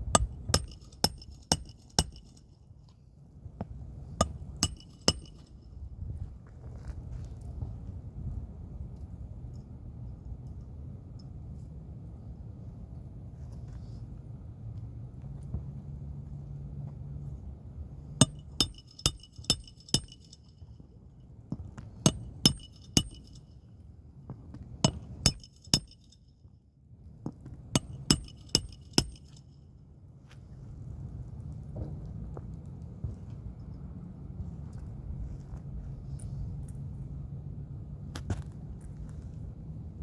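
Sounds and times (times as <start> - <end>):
low steady hum: 0.0 - 6.3, 14.1 - 31.4
sharp taps on hard ringing object: 0.2 - 2.4, 4.2 - 5.5, 18.2 - 20.4, 22.1 - 23.5, 24.9 - 26.1, 27.8 - 29.4.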